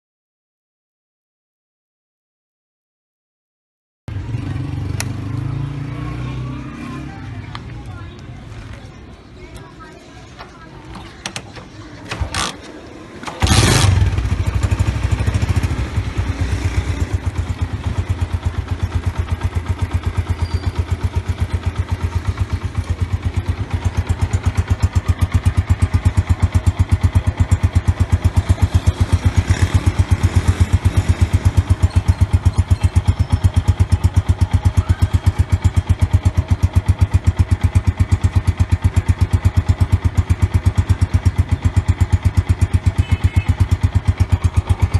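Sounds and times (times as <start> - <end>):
motorcycle engine starting and idling: 4.1 - 44.9.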